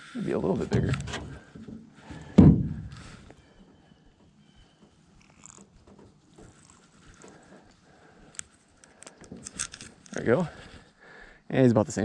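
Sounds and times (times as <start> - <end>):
heavy thump: 0.7 - 3.0.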